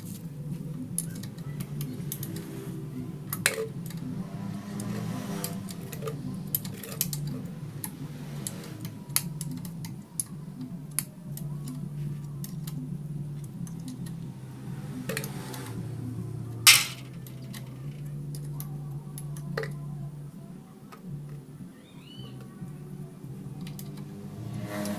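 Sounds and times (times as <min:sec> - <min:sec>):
metal parts clattering: 0:16.7 - 0:17.1.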